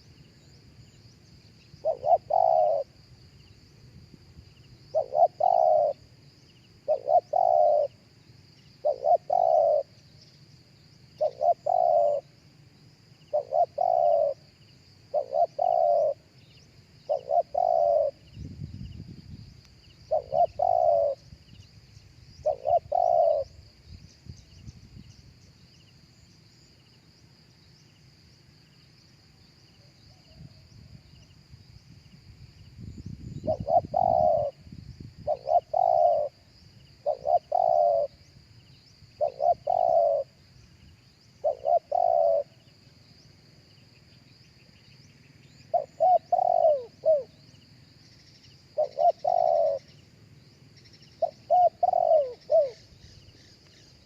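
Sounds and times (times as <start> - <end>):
high insect drone: 0.0 - 54.0
dove cooing: 1.8 - 3.0, 4.9 - 6.1, 6.8 - 8.1, 8.8 - 10.0, 11.2 - 12.4, 13.2 - 14.5, 15.1 - 16.4, 17.0 - 18.3, 20.1 - 21.3, 22.4 - 23.6, 33.4 - 38.3, 39.2 - 40.4, 41.4 - 42.7, 45.4 - 47.4, 48.7 - 50.0, 50.8 - 53.1.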